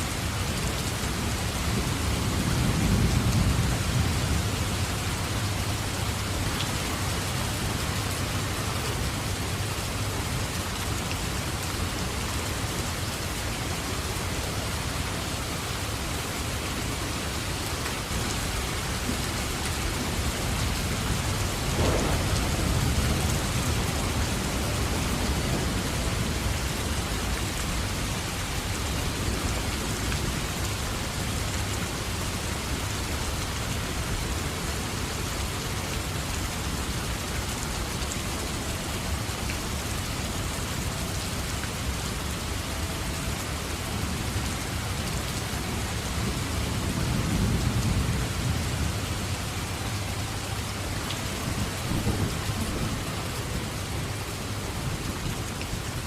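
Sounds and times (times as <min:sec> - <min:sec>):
steady rain falling: 0:00.0 - 0:56.0
thunder rumbling: 0:19.8 - 0:29.4.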